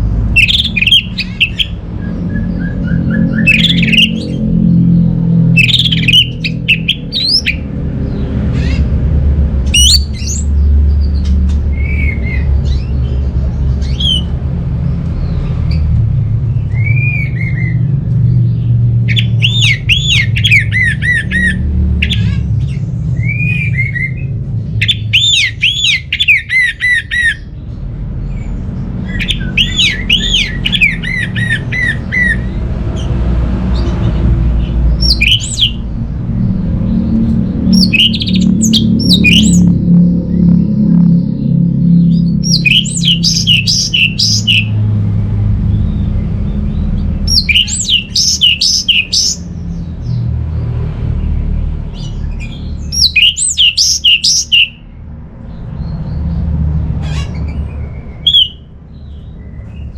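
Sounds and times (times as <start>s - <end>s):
thrush singing: 0.0s - 10.9s, 29.0s - 45.5s, 47.0s - 49.5s, 52.6s - 54.8s, 58.2s - 58.6s
low rumble: 27.5s - 48.1s.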